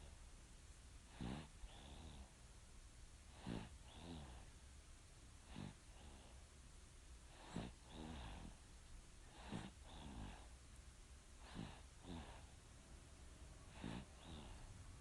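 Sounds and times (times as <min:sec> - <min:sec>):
baby snoring faintly: 0:01.1 - 0:02.4, 0:03.3 - 0:04.5, 0:05.4 - 0:06.4, 0:07.3 - 0:08.6, 0:09.3 - 0:10.6, 0:11.4 - 0:12.6, 0:13.7 - 0:14.9.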